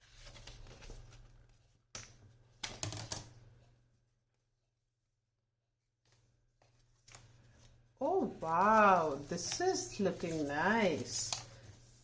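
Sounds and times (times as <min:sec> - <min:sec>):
paper rustling: 0:00.0 - 0:03.2, 0:06.1 - 0:12.0.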